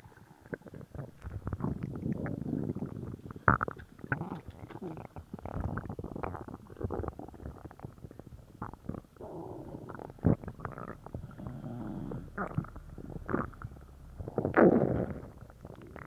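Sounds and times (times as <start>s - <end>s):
stomach gurgling rumbles: 0.0s - 16.0s.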